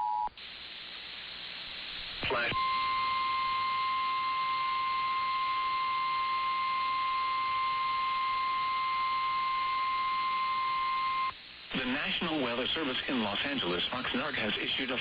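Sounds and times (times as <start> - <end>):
steady alarm tone beep: 2.6 - 11.3.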